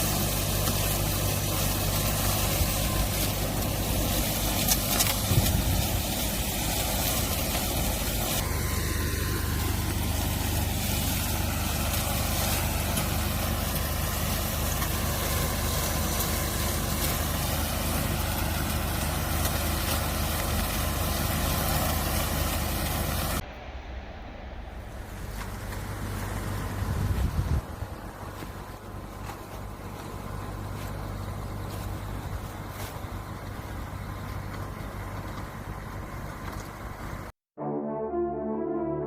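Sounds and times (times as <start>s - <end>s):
cutting machine humming: 8.2s - 12.0s
wind-like noise: 23.2s - 28.4s.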